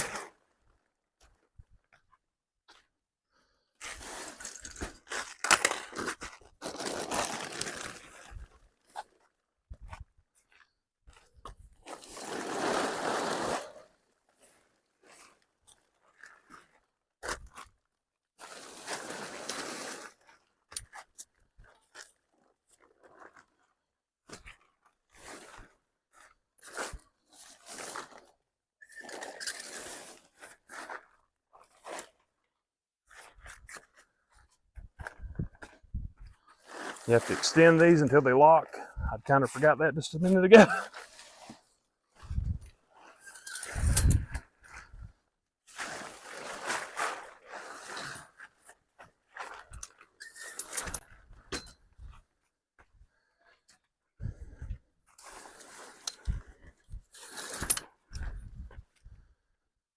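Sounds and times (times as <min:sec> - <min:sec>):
tent fabric rustling: 0:03.8 - 0:09.4, 0:11.8 - 0:17.0, 0:18.4 - 0:20.4, 0:25.0 - 0:28.4, 0:29.0 - 0:32.3, 0:33.1 - 0:38.1, 0:40.5 - 0:45.0, 0:45.6 - 0:52.4, 0:55.1 - 0:59.0
nylon fabric rustling: 0:04.0 - 0:09.4, 0:11.8 - 0:16.7, 0:35.0 - 0:37.9, 0:45.6 - 0:51.1
tent frame clicks: 0:04.3 - 0:08.0, 0:49.5 - 0:51.7, 0:57.2 - 0:58.4.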